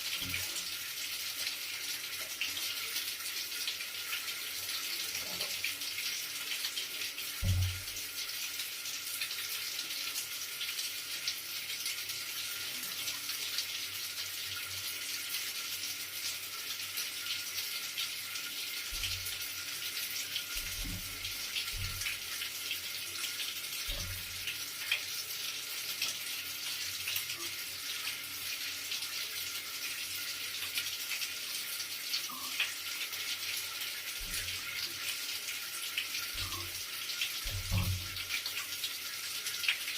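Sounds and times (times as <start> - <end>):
running water rushing: 18.0 - 25.1, 32.4 - 39.9.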